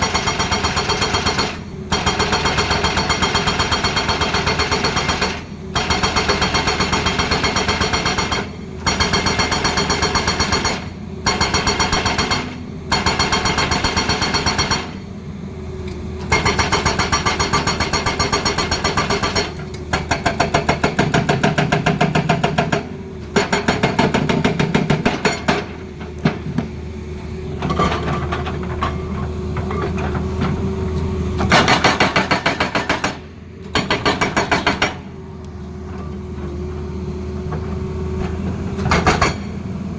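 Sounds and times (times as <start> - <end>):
hydraulic breaker hammering: 0.0 - 15.0, 31.4 - 35.1, 38.8 - 39.6
diesel engine running: 10.2 - 39.9.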